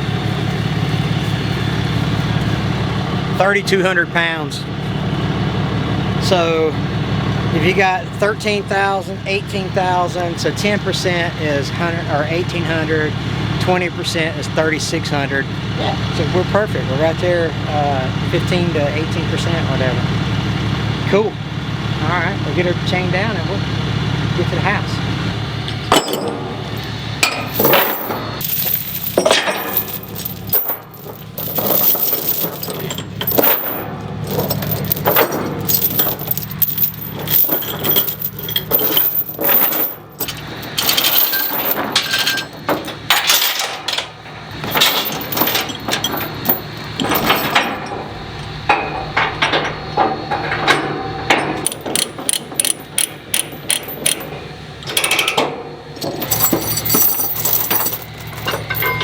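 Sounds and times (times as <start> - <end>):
steel chains clinking and rattling: 25.7 - 48.0, 51.6 - 55.4, 56.0 - 59.0.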